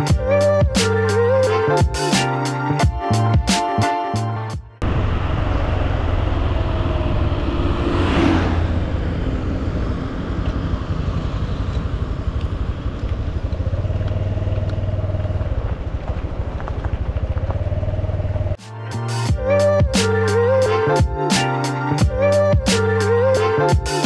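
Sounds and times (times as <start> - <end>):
motorcycle engine running: 4.8 - 7.7, 8.6 - 18.6
road noise rushing: 4.8 - 18.6.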